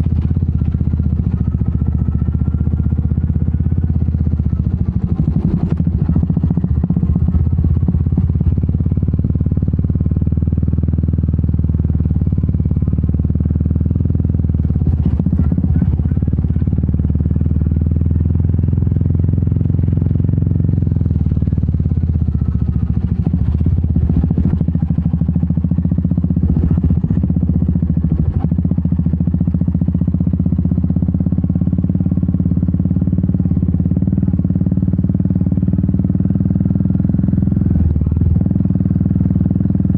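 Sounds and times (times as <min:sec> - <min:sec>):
knocks and rattles on rough road: 0:00.0 - 0:39.9
motorcycle engine running: 0:00.0 - 0:39.9.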